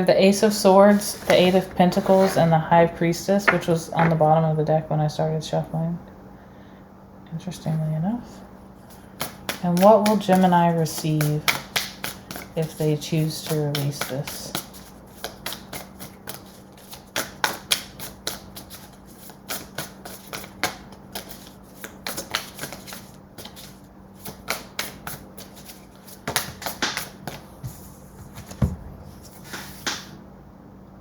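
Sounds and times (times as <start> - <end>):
cards being shuffled: 13.4 - 27.5.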